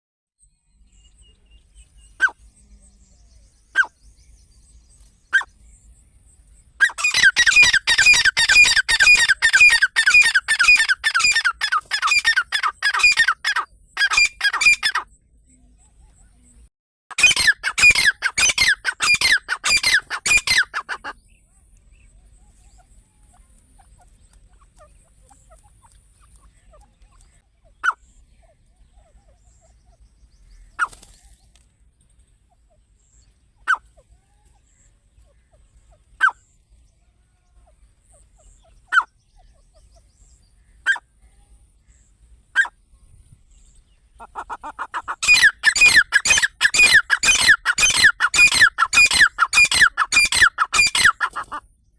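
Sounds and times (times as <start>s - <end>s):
francolin calling: 6.8s - 15.0s, 17.1s - 21.3s, 44.1s - 51.6s
short sharp bird calls: 37.6s - 42.8s.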